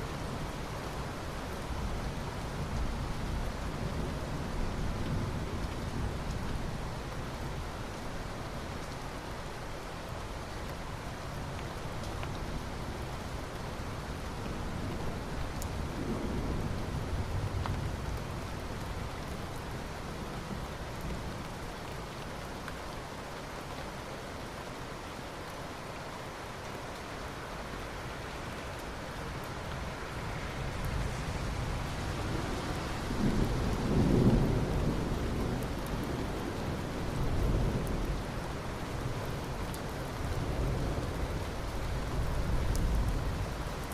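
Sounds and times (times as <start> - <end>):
steady rainfall: 0.0 - 43.9
thunder rumbling: 30.9 - 36.4.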